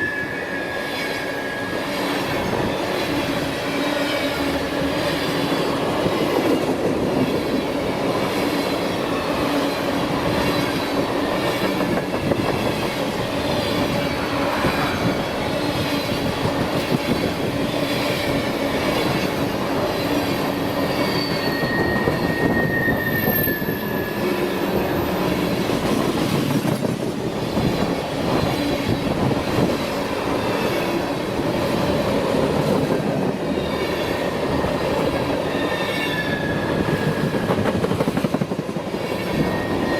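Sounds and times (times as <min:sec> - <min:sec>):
high-pitched wheel squeals: 0:00.0 - 0:02.8, 0:19.9 - 0:25.7, 0:35.5 - 0:37.6, 0:39.3 - 0:39.9.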